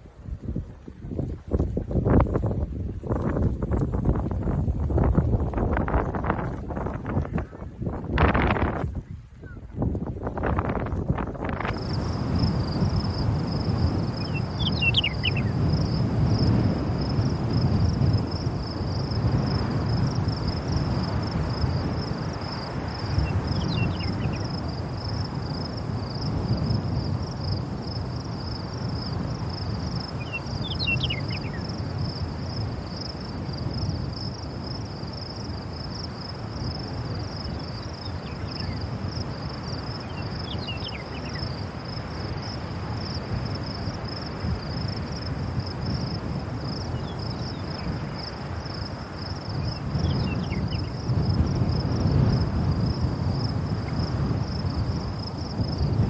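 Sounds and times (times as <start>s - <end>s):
wind gusting: 0.4s - 56.0s
high-pitched insect trill: 11.7s - 56.0s.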